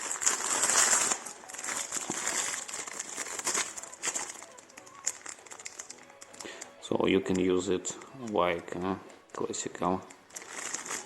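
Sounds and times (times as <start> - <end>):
packaging rustling and crinkling: 0.0 - 6.6, 9.8 - 11.0.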